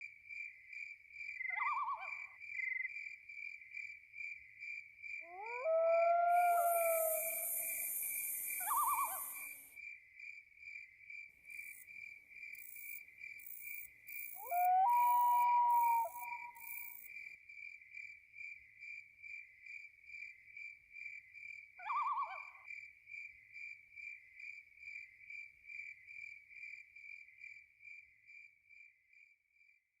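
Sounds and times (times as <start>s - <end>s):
crickets chirping: 0.3s - 22.0s
short wavering calls: 5.4s - 9.6s
insect buzzing: 6.5s - 9.6s.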